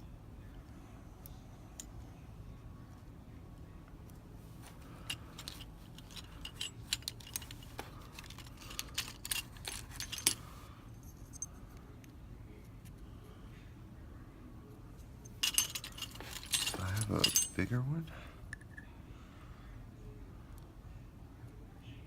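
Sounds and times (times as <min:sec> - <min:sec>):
metal lock parts clinking: 0:04.6 - 0:11.5, 0:15.2 - 0:17.8.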